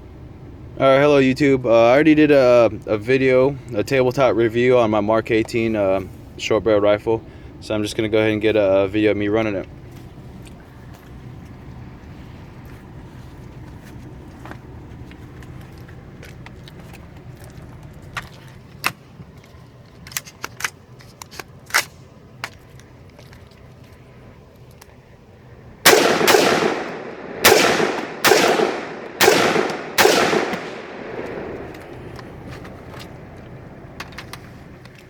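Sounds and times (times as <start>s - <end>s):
suppressed rifle shots: 25.8s - 33.4s.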